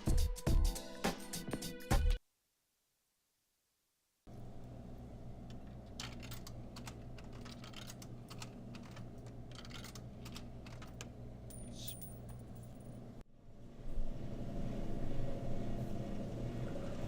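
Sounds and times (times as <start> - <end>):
low electrical hum: 4.3 - 17.0
keys clicking: 5.5 - 12.9.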